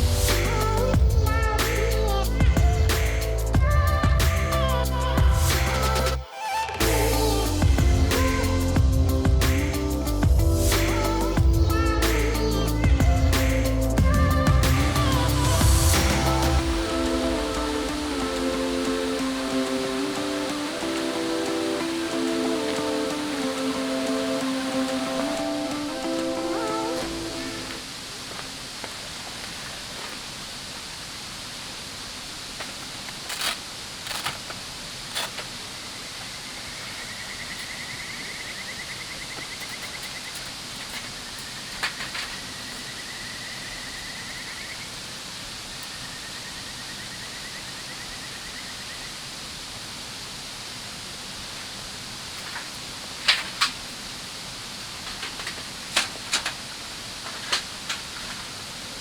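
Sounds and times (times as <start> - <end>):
river flowing: 0.0 - 59.0
sharp clicks and knocks: 55.0 - 58.5.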